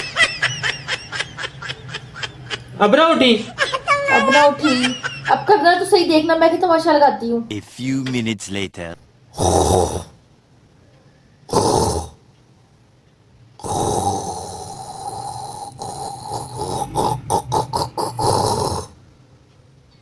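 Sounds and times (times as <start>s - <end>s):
man fake snoring: 9.3s - 10.2s, 11.5s - 12.2s, 13.6s - 19.0s.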